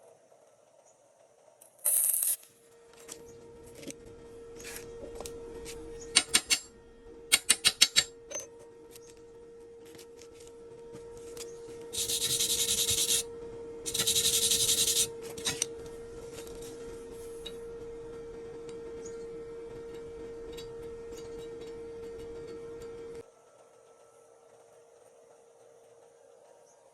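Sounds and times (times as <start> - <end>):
steady hum: 1.9 - 23.2
sharp metal taps: 7.3 - 8.1
scrubbing rasping on metal: 12.0 - 13.2, 13.9 - 15.7.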